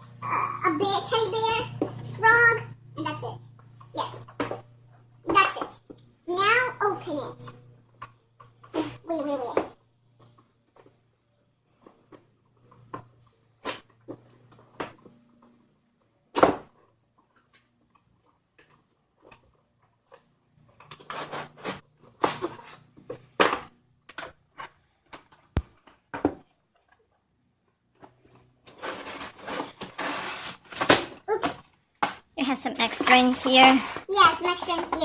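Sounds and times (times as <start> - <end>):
packaging rustling and crinkling: 28.7 - 31.1.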